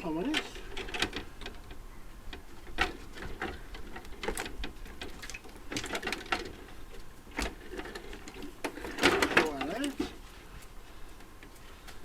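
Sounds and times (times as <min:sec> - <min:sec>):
metal parts clinking and rattling: 0:02.6 - 0:10.2.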